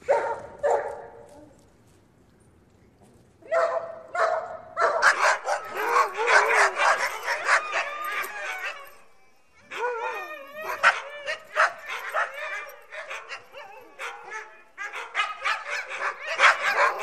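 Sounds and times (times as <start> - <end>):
dog barking angrily: 0.0 - 1.0, 3.5 - 7.9, 10.8 - 17.0.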